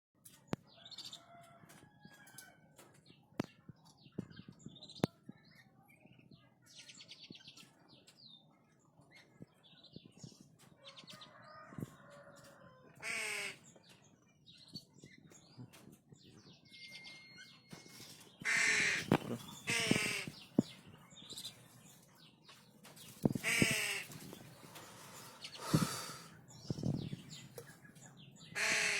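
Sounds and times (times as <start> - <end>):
bird giving harsh yapping calls: 18.4 - 20.5, 23.4 - 24.2, 28.5 - 28.9.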